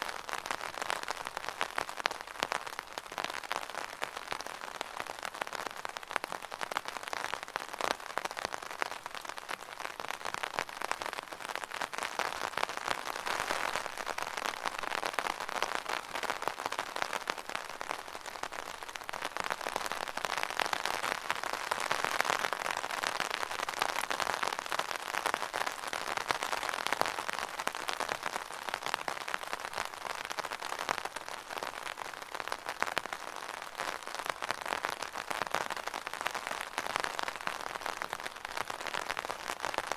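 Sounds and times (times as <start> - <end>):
rain on umbrella: 0.0 - 39.9.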